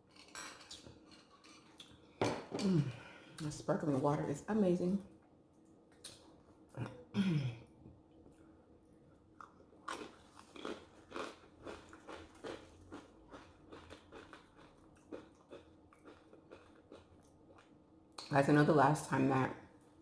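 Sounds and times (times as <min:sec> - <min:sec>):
person chewing food: 0:09.2 - 0:17.8.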